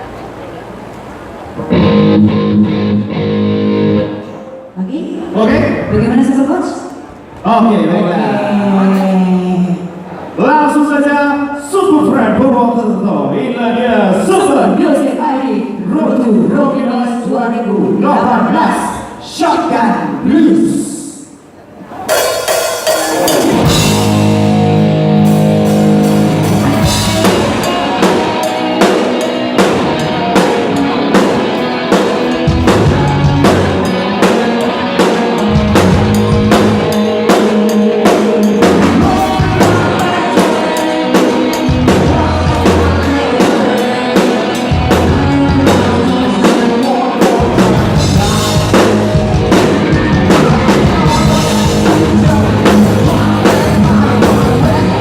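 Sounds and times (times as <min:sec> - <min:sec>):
bass: 0:00.0 - 0:04.3, 0:23.0 - 0:55.0
distorted guitar chords: 0:01.5 - 0:04.8, 0:22.3 - 0:55.0
drum beats: 0:22.0 - 0:55.0.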